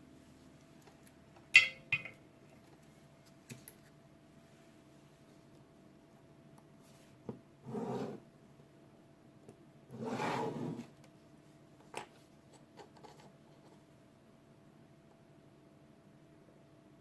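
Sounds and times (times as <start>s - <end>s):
rubbing scrapes: 10.0s - 10.9s.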